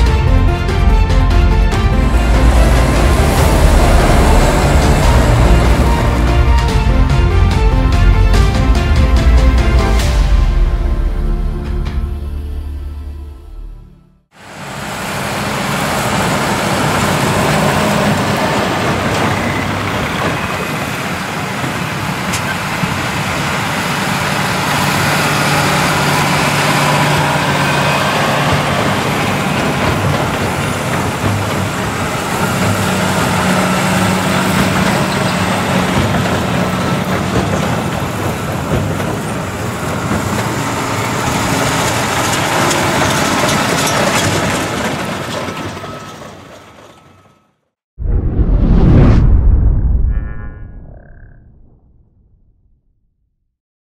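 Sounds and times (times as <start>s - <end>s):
tractor engines under load: 14.5s - 47.5s.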